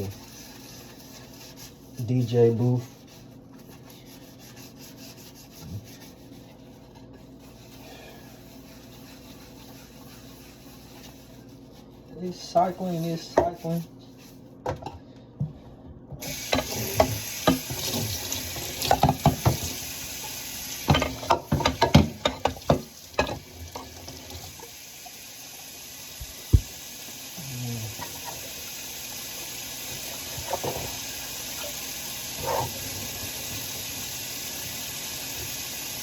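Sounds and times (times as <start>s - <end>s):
water running into sink: 16.2s - 36.0s
dishes and utensils clattering: 20.9s - 24.0s.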